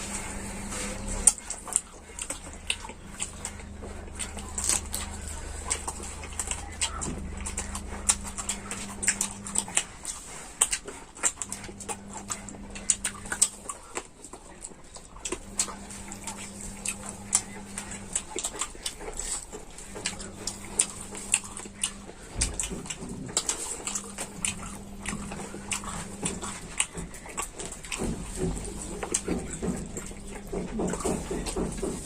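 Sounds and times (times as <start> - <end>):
low hum: 0.0 - 10.7
wet chewing and crunching: 0.0 - 32.0.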